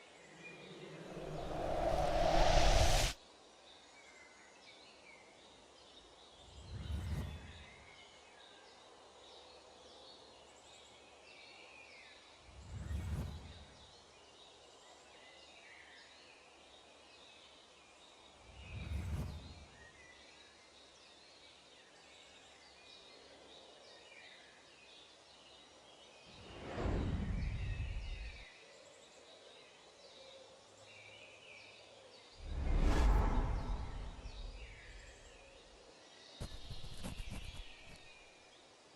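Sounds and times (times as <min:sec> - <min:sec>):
low swells: 0:00.4 - 0:03.2, 0:32.4 - 0:35.5
loud rising swell: 0:00.5 - 0:03.2, 0:32.4 - 0:35.3
small birds chirping: 0:33.1 - 0:38.9.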